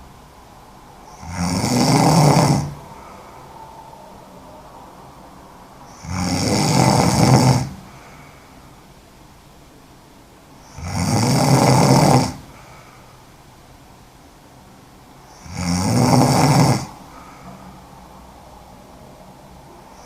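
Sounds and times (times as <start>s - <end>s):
quiet breathing: 0.0s - 10.8s, 11.5s - 20.0s
woman snoring: 1.1s - 3.4s, 5.9s - 8.4s, 10.6s - 12.6s, 15.3s - 17.4s.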